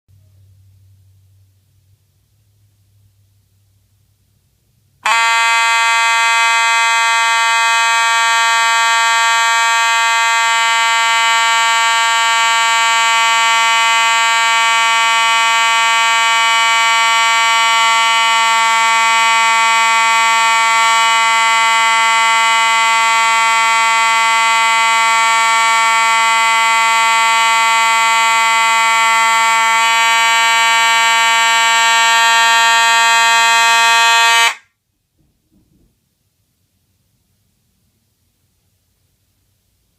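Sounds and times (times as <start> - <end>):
fire alarm horn buzzing: 5.0 - 34.8.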